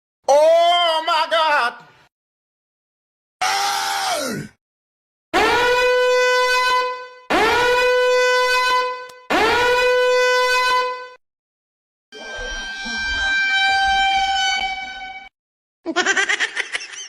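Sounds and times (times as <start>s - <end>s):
long buzzy horn blasts: 5.4s - 11.2s, 12.2s - 15.3s.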